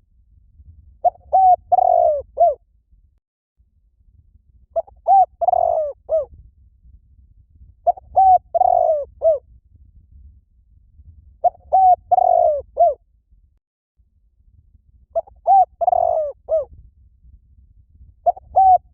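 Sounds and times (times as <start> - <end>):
dove cooing: 1.0 - 2.6, 4.8 - 6.3, 7.9 - 9.4, 11.4 - 13.0, 15.2 - 16.7, 18.3 - 18.9.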